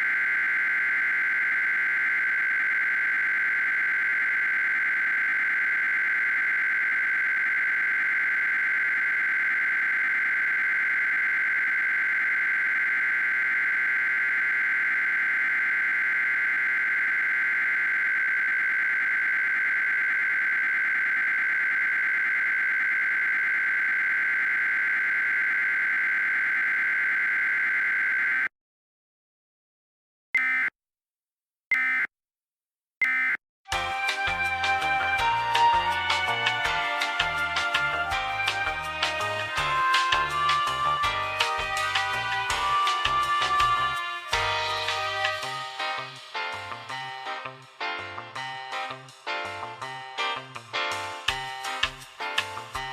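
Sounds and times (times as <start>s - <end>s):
warbling alert data tone: 0.0s - 28.4s.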